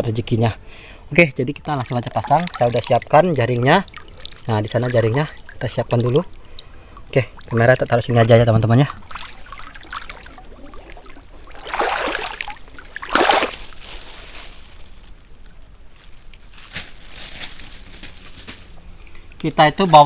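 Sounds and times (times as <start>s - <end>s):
river water sloshing and splashing: 1.8s - 14.4s
loud splashes: 2.2s - 8.0s, 8.8s - 13.8s.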